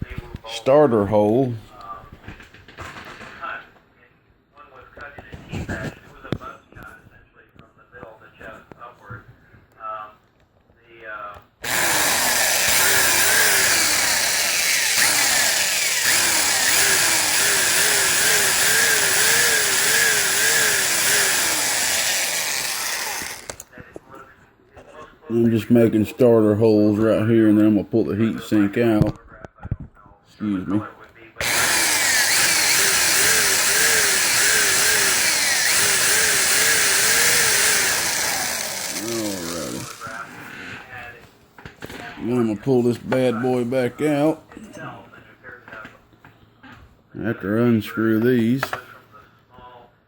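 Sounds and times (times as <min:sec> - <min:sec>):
electric drill drilling metal: 0:11.6 - 0:23.7, 0:31.4 - 0:40.3.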